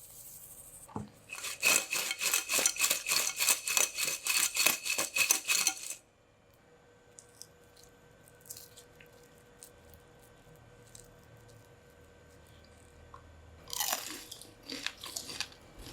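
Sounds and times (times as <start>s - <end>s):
crunching crispy snacks: 13.6s - 15.9s.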